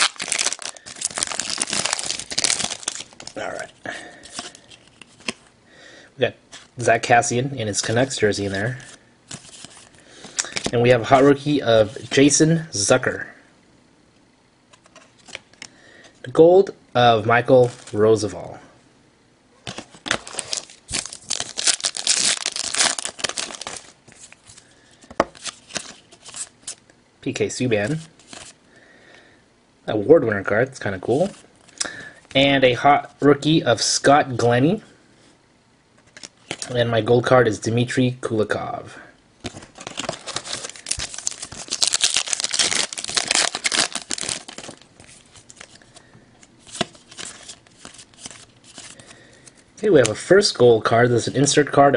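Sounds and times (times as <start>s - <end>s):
plastic wrapper crinkling and tearing: 0.0s - 3.7s, 19.7s - 24.6s, 39.4s - 45.8s.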